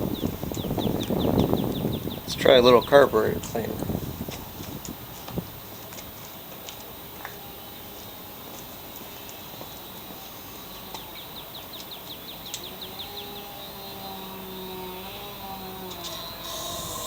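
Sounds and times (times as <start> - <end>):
faint steady hum: 3.8 - 17.0
bird trilling: 16.1 - 17.0.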